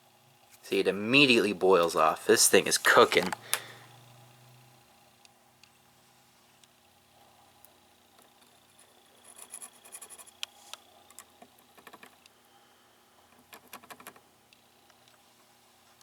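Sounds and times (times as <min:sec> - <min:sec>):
vacuum tube crackling: 0:00.6 - 0:03.8.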